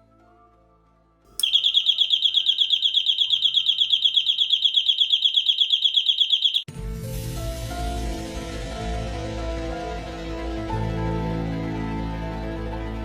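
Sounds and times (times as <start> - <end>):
relay click: 1.4 - 5.4
shrill pulsing alarm tone: 1.4 - 6.7.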